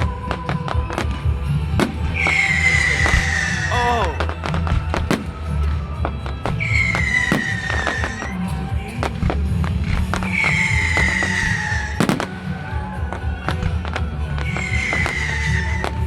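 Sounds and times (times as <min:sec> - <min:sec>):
music: 0:00.0 - 0:16.0
fireworks cracking and popping: 0:00.4 - 0:03.5, 0:04.2 - 0:12.6.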